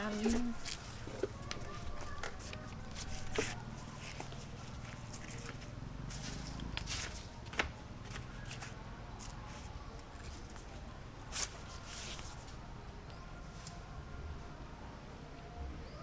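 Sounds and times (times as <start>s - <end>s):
scraping rustle: 0.0s - 7.4s
rustles: 0.0s - 13.8s.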